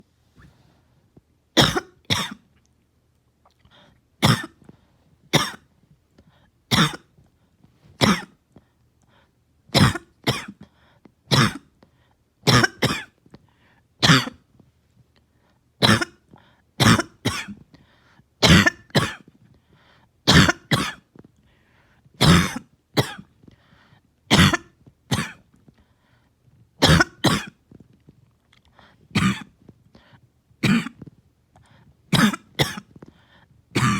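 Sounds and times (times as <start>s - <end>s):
person coughing: 1.6s - 2.4s, 4.2s - 4.6s, 5.4s - 5.7s, 6.7s - 7.1s, 8.0s - 8.4s, 9.8s - 10.6s, 11.3s - 11.7s, 12.5s - 13.2s, 14.0s - 14.4s, 15.8s - 16.2s, 16.8s - 17.6s, 18.4s - 19.3s, 20.3s - 21.1s, 22.2s - 23.3s, 24.3s - 25.4s, 26.8s - 27.6s, 29.2s - 29.6s, 30.6s - 31.1s, 32.1s - 33.0s.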